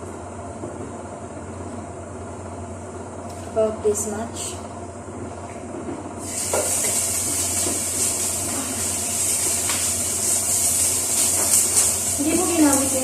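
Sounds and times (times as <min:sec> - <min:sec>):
ginger sizzling in oil: 0:06.2 - 0:13.0.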